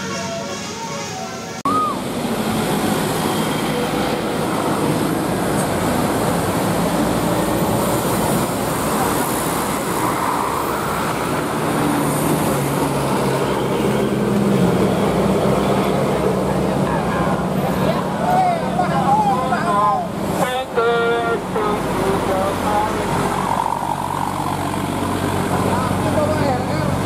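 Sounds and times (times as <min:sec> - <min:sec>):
road traffic: 0:00.0 - 0:27.0.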